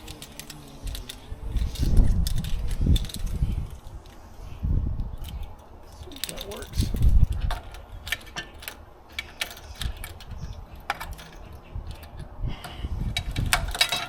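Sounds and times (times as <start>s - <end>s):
hose fittings clicking: 0.0s - 4.3s, 5.0s - 14.0s.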